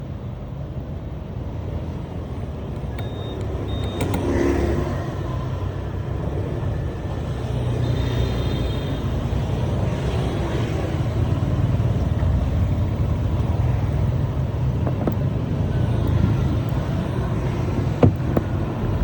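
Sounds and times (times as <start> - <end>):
car engine rumbling: 1.1 - 7.4, 9.4 - 19.0
clicks: 2.7 - 4.5, 14.6 - 19.0
short high beeps: 2.9 - 4.7.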